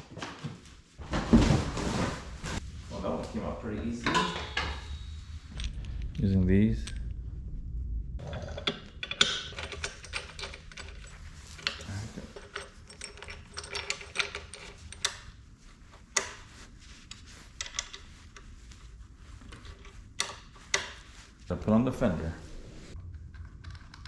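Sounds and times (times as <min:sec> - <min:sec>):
hand tools clicking and rattling: 0:08.2 - 0:15.3.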